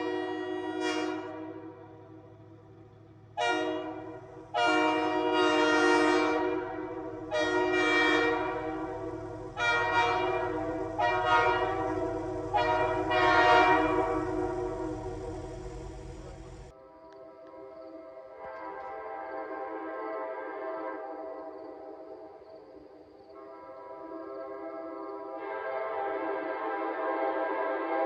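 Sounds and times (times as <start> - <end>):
train air horn blasts: 0.0 - 2.1, 3.3 - 16.7.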